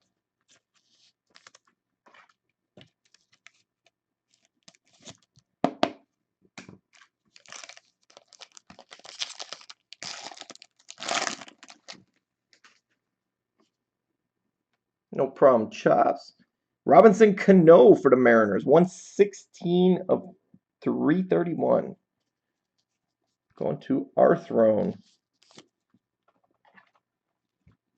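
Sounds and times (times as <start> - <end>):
packaging crinkling and rustling: 0.5 - 5.4, 6.7 - 13.0.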